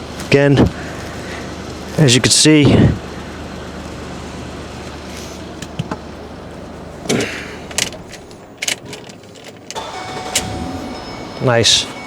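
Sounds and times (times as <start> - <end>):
small parts clicking and knocking: 7.1 - 9.8.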